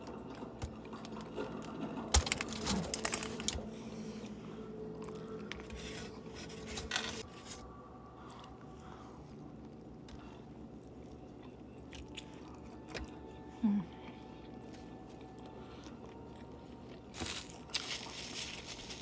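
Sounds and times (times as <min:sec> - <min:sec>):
burrito crinkling while eaten: 0:00.4 - 0:03.8, 0:16.9 - 0:19.0.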